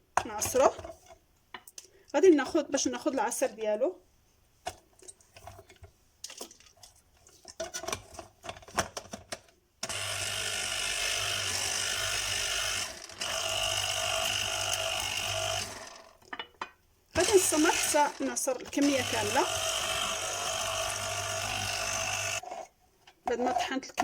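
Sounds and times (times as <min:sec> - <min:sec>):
juicer motor humming: 0:09.8 - 0:16.1, 0:17.2 - 0:22.4.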